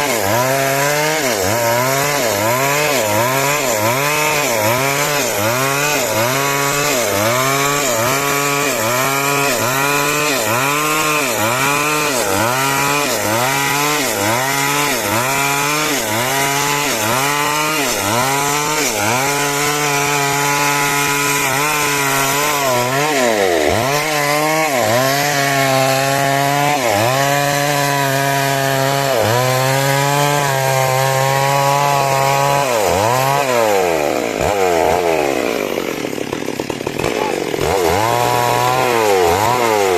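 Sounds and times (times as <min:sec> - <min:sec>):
chainsaw cutting through timber: 0:00.0 - 0:39.9.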